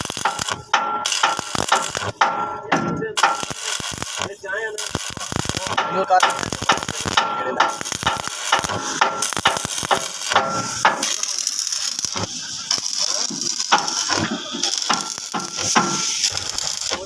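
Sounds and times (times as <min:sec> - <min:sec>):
metallic clicking and clanking: 0:00.0 - 0:03.7.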